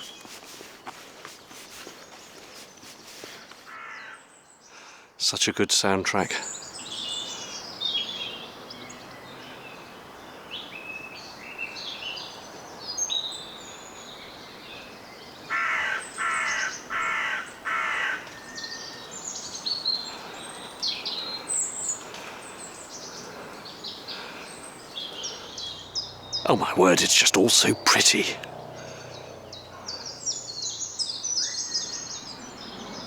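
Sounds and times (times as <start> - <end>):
songbirds chirping: 0.0 - 33.0
crow cawing: 3.7 - 4.3, 15.5 - 18.3.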